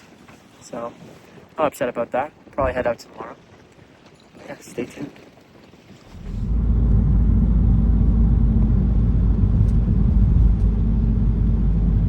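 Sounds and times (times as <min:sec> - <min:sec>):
vehicle rumbling: 0:06.1 - 0:12.0.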